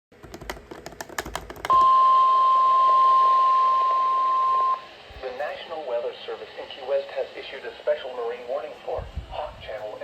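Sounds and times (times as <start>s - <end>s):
steady high warning beep: 1.7s - 4.9s.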